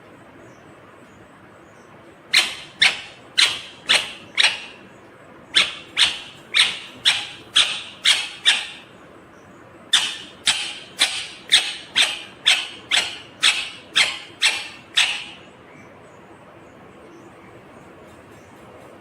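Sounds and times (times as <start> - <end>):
parakeet shrieking calls: 2.3 - 4.9, 5.5 - 8.9, 9.9 - 15.5.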